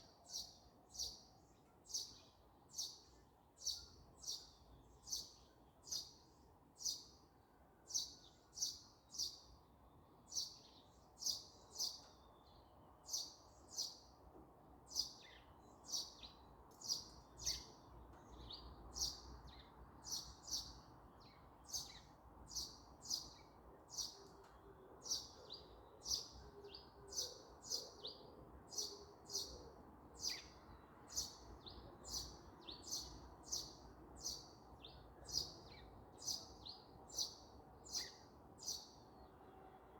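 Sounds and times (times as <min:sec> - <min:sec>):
songbird chirping: 0:00.0 - 0:39.9.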